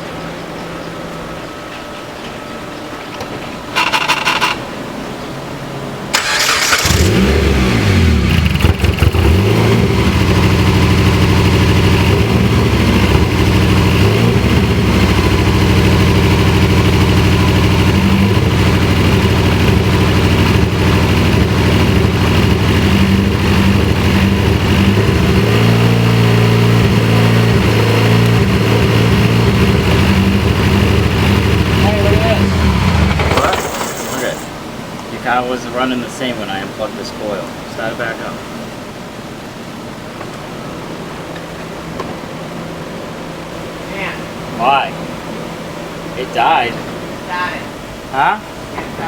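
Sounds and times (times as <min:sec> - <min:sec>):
car engine running unevenly: 0:06.1 - 0:34.6.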